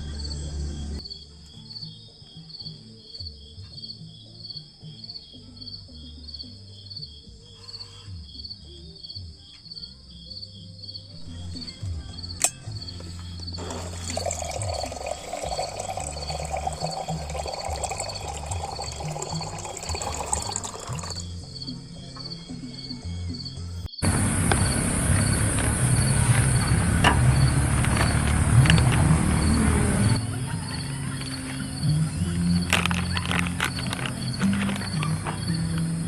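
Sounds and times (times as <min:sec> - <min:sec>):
background music: 0:00.0 - 0:36.0
crickets chirping: 0:00.0 - 0:36.0
sharp click: 0:12.4 - 0:12.7
water pouring: 0:13.6 - 0:21.2.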